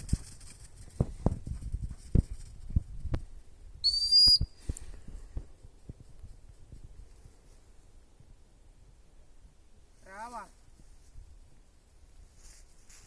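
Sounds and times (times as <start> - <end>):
dog training whistle blast: 3.8 - 4.5.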